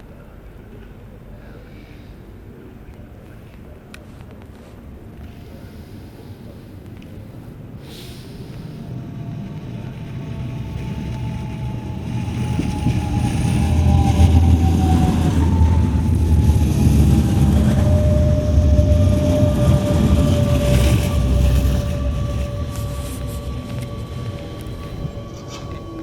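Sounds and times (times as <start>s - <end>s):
electric train running past: 5.1s - 26.0s
thin whining tones: 8.9s - 26.0s.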